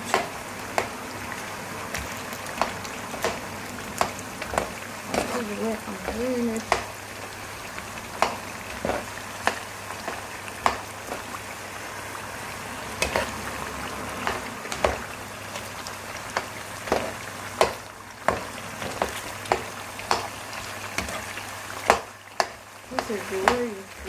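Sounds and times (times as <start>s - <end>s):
potatoes sizzling in oil: 0.0s - 24.0s
spoon knocking against pan: 6.0s - 6.9s, 8.2s - 11.2s, 14.2s - 15.0s, 16.3s - 20.3s, 21.9s - 23.6s.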